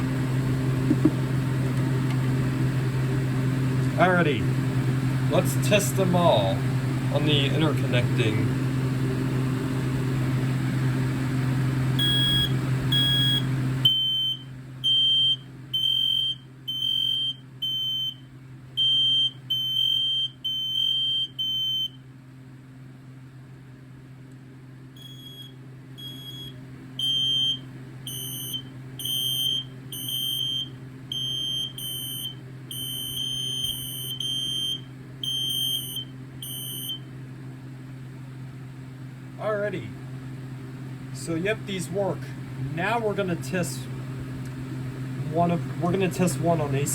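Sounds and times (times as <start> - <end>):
smoke alarm beeping: 12.0 - 22.0, 25.0 - 37.1.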